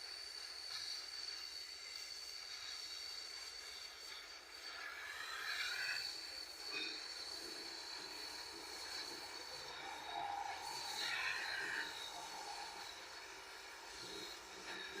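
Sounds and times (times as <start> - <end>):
gas torch flame hissing: 0.0 - 15.0
thin high whistle: 0.0 - 15.0.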